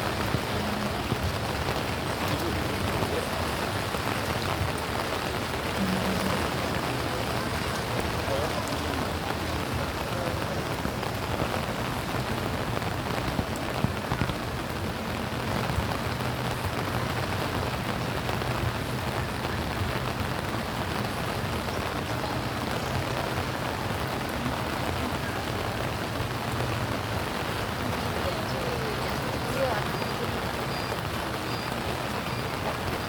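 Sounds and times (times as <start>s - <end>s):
rain pattering on surfaces: 0.0s - 33.0s.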